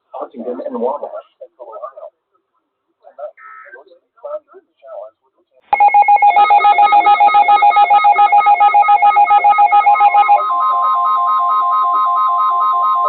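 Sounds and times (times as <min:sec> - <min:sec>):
rapidly pulsing alert beeps: 0:05.8 - 0:13.0.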